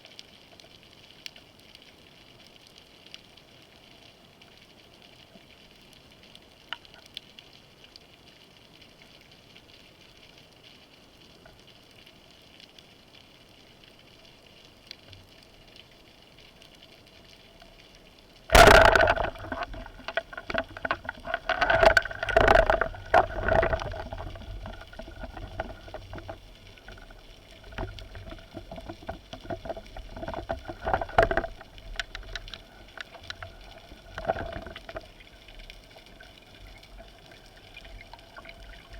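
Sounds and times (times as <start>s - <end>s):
faint water hiss: 0.0s - 38.9s
water rushing and bubbling: 18.4s - 38.9s.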